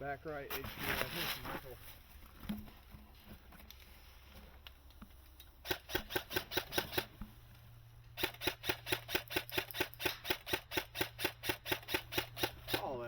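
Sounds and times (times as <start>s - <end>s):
airsoft gun firing rapid shots: 5.6s - 7.1s, 8.2s - 13.0s.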